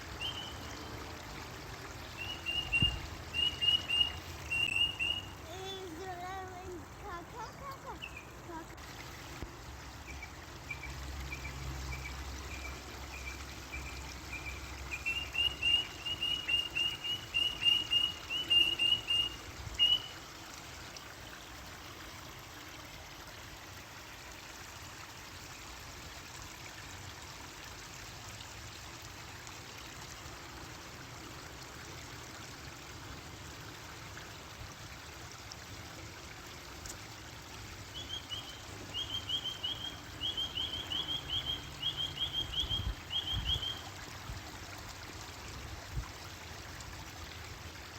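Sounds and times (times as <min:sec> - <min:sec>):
trickling water: 0:00.0 - 0:47.9
bird chirping: 0:00.2 - 0:00.6, 0:02.2 - 0:05.4, 0:10.1 - 0:20.1, 0:37.9 - 0:43.8.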